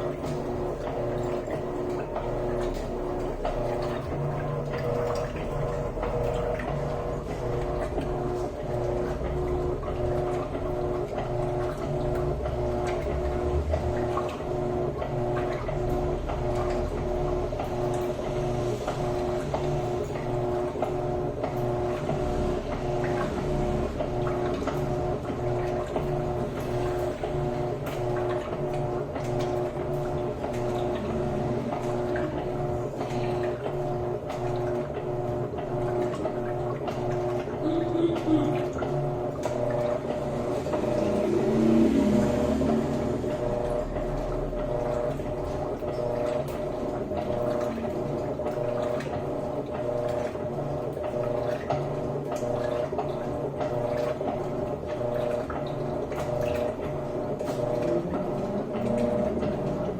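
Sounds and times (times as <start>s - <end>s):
washing machine churning: 0.0s - 59.9s.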